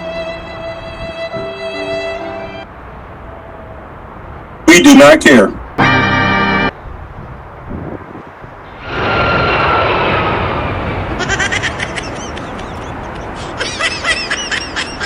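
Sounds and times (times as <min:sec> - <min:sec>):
rushing noise with falling whine: 0:07.6 - 0:13.1.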